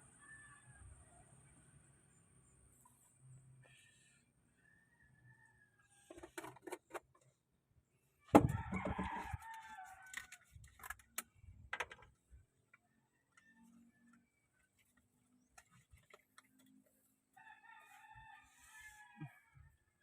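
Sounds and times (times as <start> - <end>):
scattered clicks and knocks: 10.6 - 13.4.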